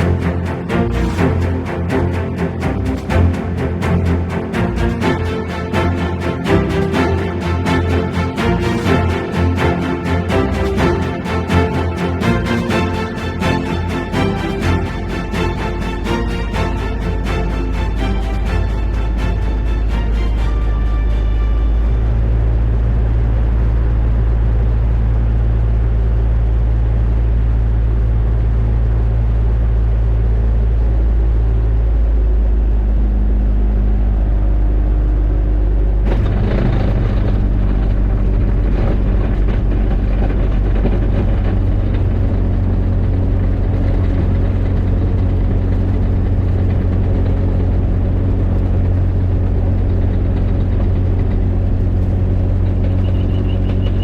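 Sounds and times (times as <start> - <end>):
microlight engine running: 0.0 - 32.8, 33.7 - 54.0
rough engine rattling: 35.9 - 54.0.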